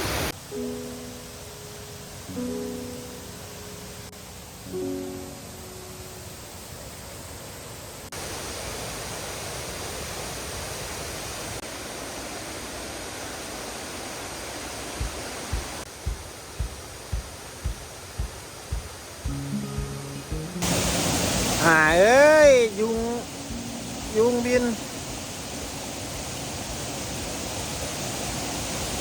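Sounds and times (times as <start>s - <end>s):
fast-running floodwater: 0.0s - 0.4s, 6.2s - 29.0s
heavy rain: 8.1s - 29.0s
low thumps: 15.0s - 21.0s, 22.4s - 24.2s.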